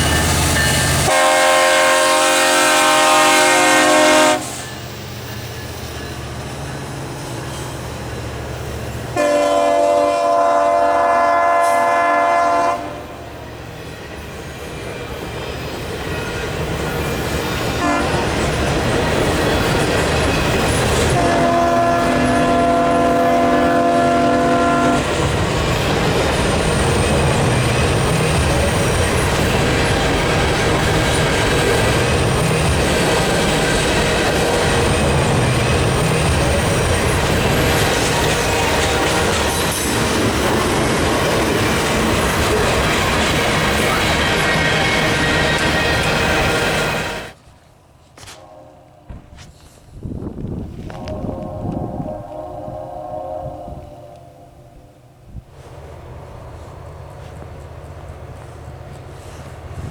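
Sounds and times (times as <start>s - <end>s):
train horn chord blasts: 1.0s - 4.6s, 9.2s - 13.2s, 17.8s - 18.3s, 21.1s - 25.1s, 48.2s - 49.4s, 50.9s - 55.0s
wheels clattering on rails: 14.1s - 23.4s, 24.6s - 48.4s
diesel locomotive rumble: 15.8s - 47.4s, 48.2s - 59.9s.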